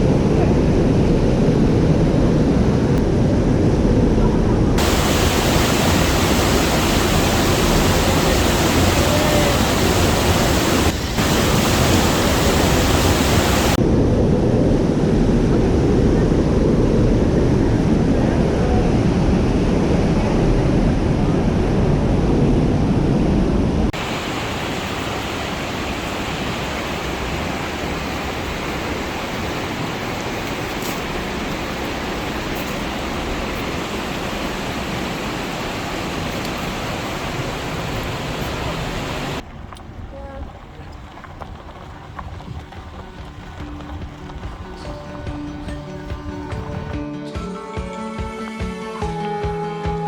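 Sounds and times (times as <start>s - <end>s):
rush of flowing water: 4.8s - 13.8s, 23.9s - 39.8s.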